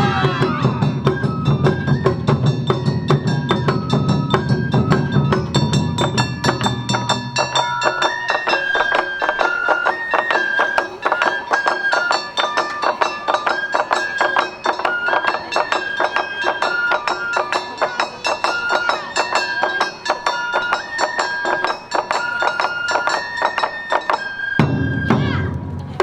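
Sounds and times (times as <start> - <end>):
bamboo flute melody: 0.0 - 26.0
plucked shamisen: 0.0 - 26.0
deep drum boom: 24.6 - 26.0.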